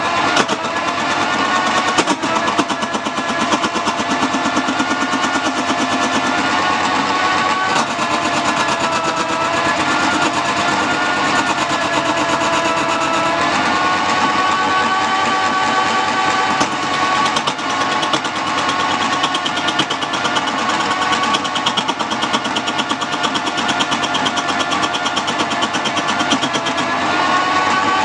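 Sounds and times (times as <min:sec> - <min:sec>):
lathe motor whine: 0:00.0 - 0:28.0
turning tool clattering on wood: 0:16.6 - 0:26.9.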